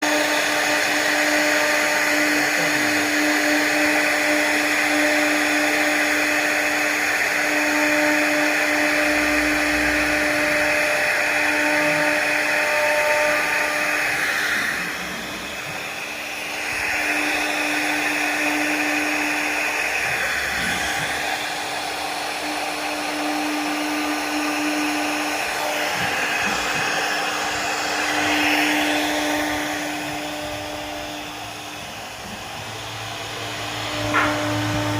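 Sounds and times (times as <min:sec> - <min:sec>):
hiss of wood cutting: 0:00.0 - 0:34.9
router motor whine: 0:00.0 - 0:34.9.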